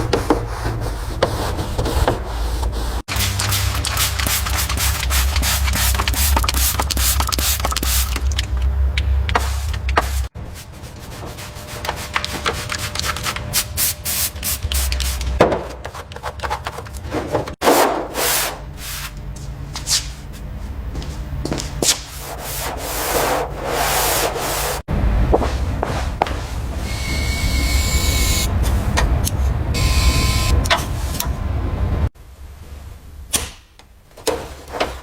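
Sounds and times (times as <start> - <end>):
sanding car bodywork: 0.0 - 7.2, 21.8 - 24.9.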